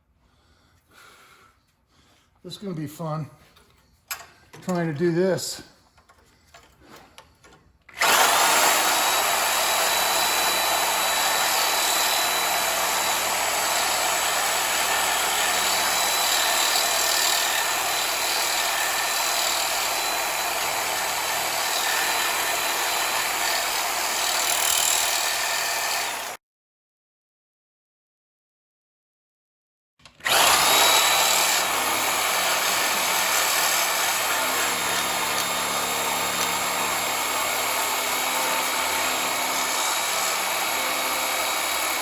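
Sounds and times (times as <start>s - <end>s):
reciprocating saw cutting steel: 7.9s - 26.4s, 30.2s - 42.0s.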